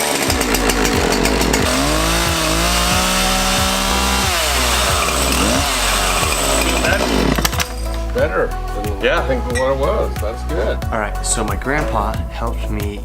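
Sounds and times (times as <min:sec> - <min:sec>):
chainsaw revving: 0:00.0 - 0:07.7.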